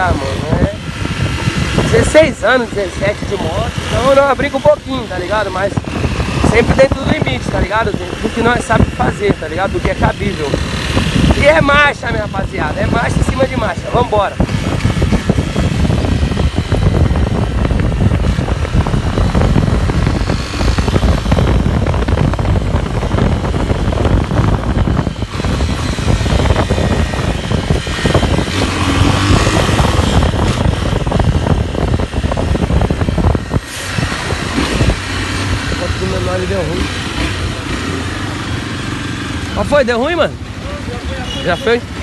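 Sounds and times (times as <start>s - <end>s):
motorcycle engine accelerating: 0.0s - 42.0s.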